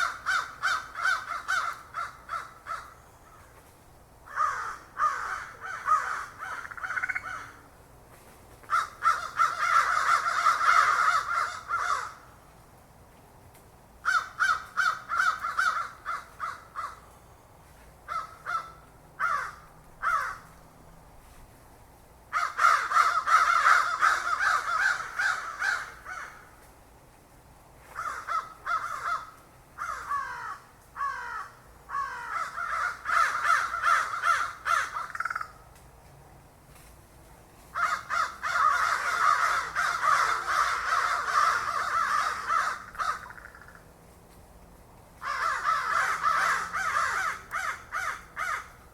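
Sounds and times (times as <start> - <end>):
crows cawing: 0.0 - 3.5, 4.3 - 7.7, 8.6 - 12.4, 14.0 - 17.1, 18.1 - 20.6, 22.3 - 26.6, 27.9 - 35.6, 37.7 - 43.9, 45.2 - 48.9.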